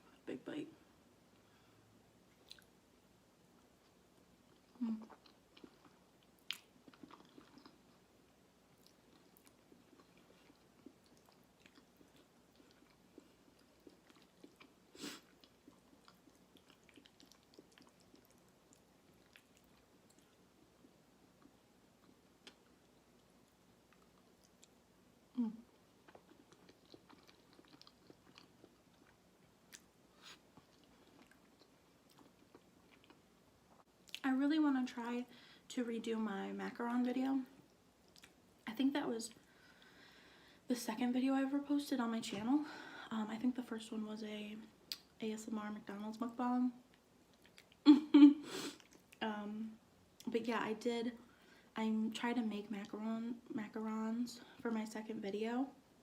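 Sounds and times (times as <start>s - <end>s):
close-miked chewing: 2.3s - 2.7s, 3.8s - 8.1s, 8.7s - 34.2s, 37.6s - 38.4s, 46.9s - 47.9s, 48.7s - 49.2s.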